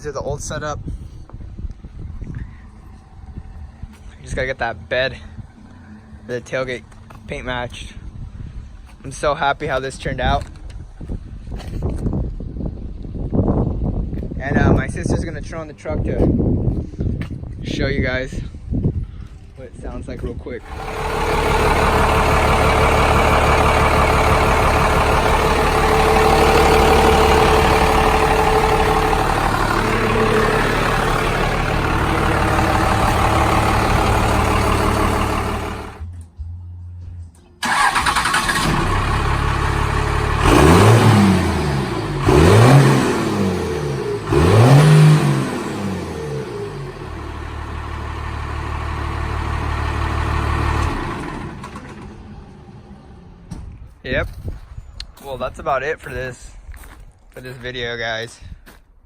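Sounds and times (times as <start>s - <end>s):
engine revving: 20.6s - 36.0s, 37.6s - 52.9s
diesel engine running: 20.6s - 36.1s, 37.6s - 54.6s.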